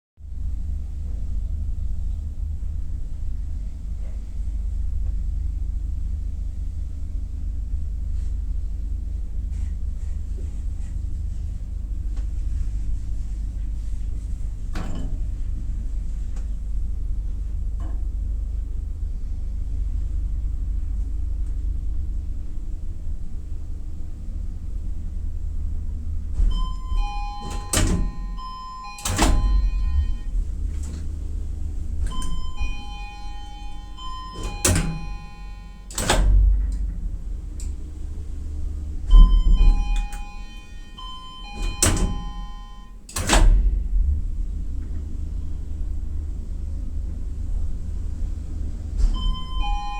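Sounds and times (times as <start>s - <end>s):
elevator humming: 11.2s - 49.9s
elevator clunks: 26.2s - 45.3s, 48.9s - 49.9s
short chime-like tones: 26.5s - 30.3s, 32.1s - 35.9s, 39.2s - 42.9s, 49.2s - 49.9s.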